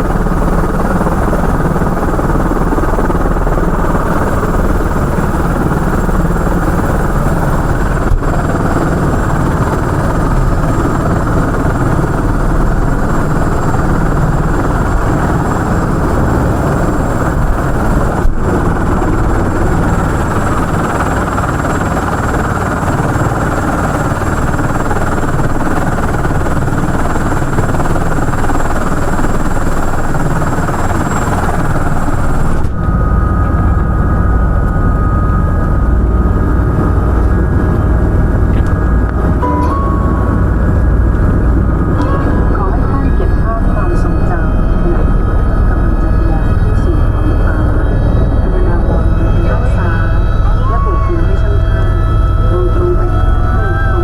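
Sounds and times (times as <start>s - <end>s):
helicopter rotor and engine noise: 0.0s - 54.0s
thin high whine: 39.4s - 54.0s.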